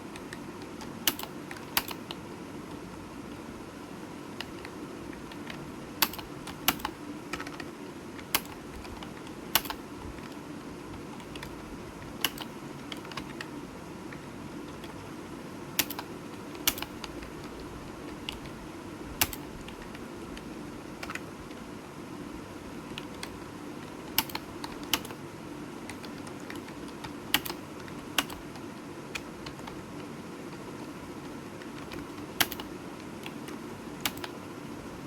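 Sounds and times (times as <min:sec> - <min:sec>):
computer keyboard typing: 0:00.0 - 0:02.8, 0:04.4 - 0:15.1, 0:15.8 - 0:18.6, 0:19.2 - 0:21.6, 0:22.8 - 0:25.2, 0:25.8 - 0:34.4
faint steady hum: 0:00.0 - 0:35.0.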